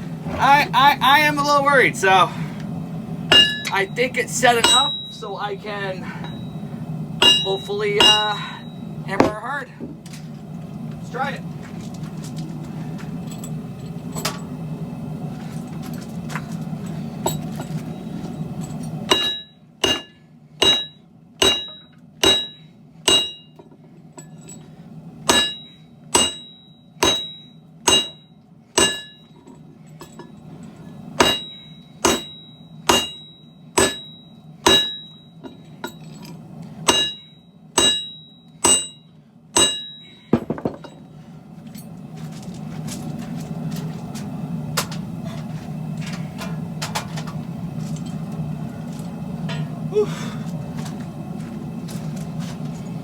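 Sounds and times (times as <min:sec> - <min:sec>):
steady low rumble: 0:00.0 - 0:40.1, 0:40.8 - 0:53.0
hammer ringing on anvil: 0:03.3 - 0:03.9, 0:04.5 - 0:05.3, 0:06.2 - 0:06.6, 0:07.2 - 0:09.4, 0:19.1 - 0:23.6, 0:25.3 - 0:29.4, 0:31.2 - 0:36.1, 0:36.9 - 0:41.0.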